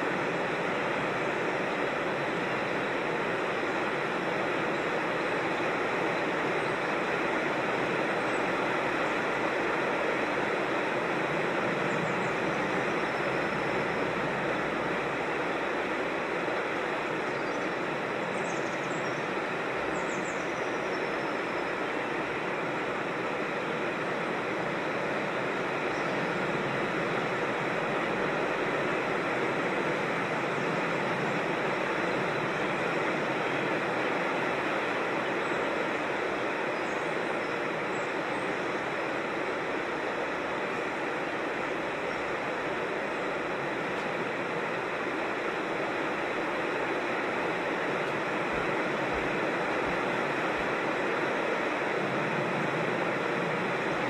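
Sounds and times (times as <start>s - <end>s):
creek water rushing over cascades: 0.0s - 54.0s
faint high bird chirps: 17.2s - 19.3s.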